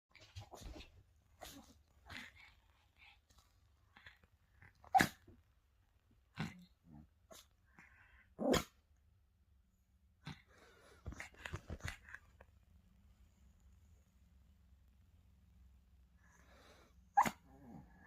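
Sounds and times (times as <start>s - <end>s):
dog barking: 17.2s - 17.4s.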